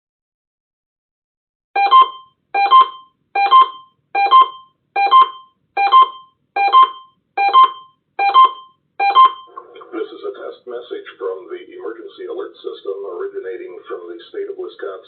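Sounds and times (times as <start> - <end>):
radio broadcast: 9.5 - 15.0.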